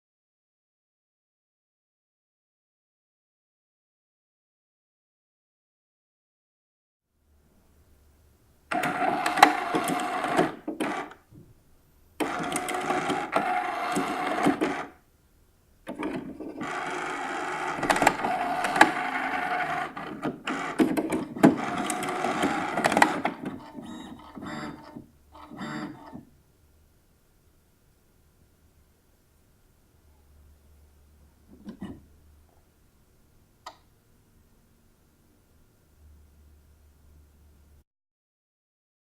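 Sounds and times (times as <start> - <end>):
printer motors whirring: 8.7 - 11.2, 12.2 - 15.0, 15.9 - 26.2
printer carriage clicks: 8.8 - 11.1, 17.7 - 23.6.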